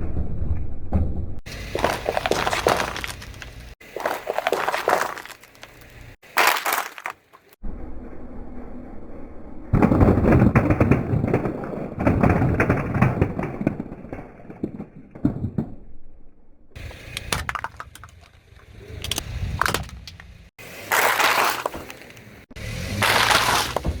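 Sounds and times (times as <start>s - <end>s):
tyre crushing objects: 1.5s - 7.6s, 19.6s - 24.0s
low rumble: 7.6s - 10.2s.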